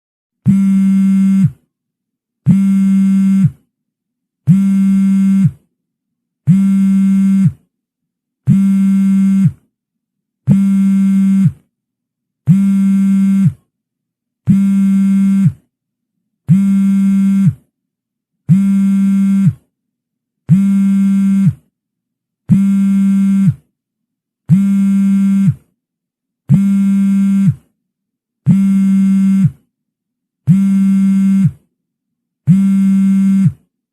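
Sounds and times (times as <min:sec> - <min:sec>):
phone vibrating buzz: 0:00.5 - 0:01.6, 0:02.5 - 0:03.6, 0:04.5 - 0:05.6, 0:06.5 - 0:07.6, 0:08.5 - 0:09.6, 0:10.5 - 0:11.6, 0:12.5 - 0:13.6, 0:14.5 - 0:15.6, 0:16.5 - 0:17.7, 0:18.5 - 0:19.6, 0:20.5 - 0:21.6, 0:22.5 - 0:23.6, 0:24.5 - 0:25.6, 0:26.5 - 0:27.7, 0:28.5 - 0:29.6, 0:30.5 - 0:31.6, 0:32.5 - 0:33.6.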